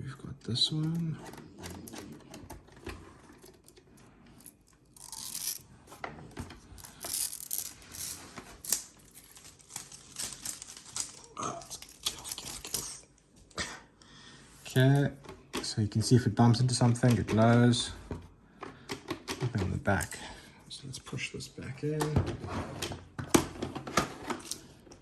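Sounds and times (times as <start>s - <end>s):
plastic parts clicking and scraping: 0.6s - 13.1s, 16.7s - 20.2s, 21.9s - 25.0s.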